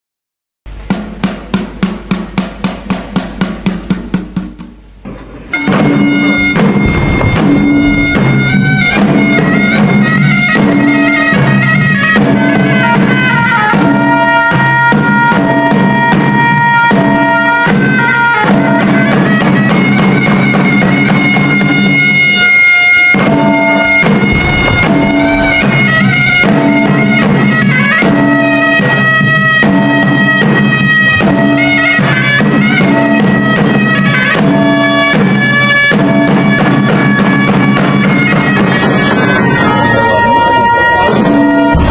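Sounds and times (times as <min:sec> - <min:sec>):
drums beating: 0:00.8 - 0:41.9
reed pipes playing a melody: 0:05.2 - 0:15.3, 0:38.2 - 0:41.8
drone notes: 0:05.7 - 0:09.6, 0:23.4 - 0:27.2.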